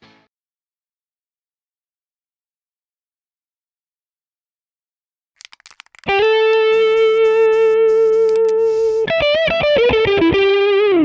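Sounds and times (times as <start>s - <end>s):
scratchy clicks: 5.4s - 9.1s
rhythmic hiss: 6.6s - 9.1s.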